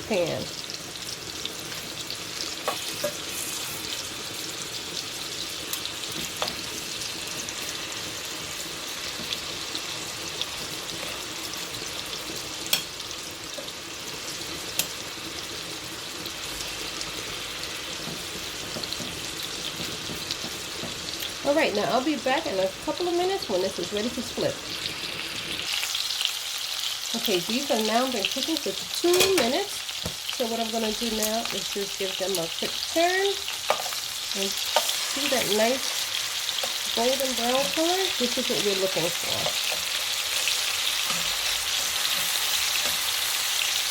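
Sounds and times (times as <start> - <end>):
chicken sizzling in oil: 0.0 - 43.9.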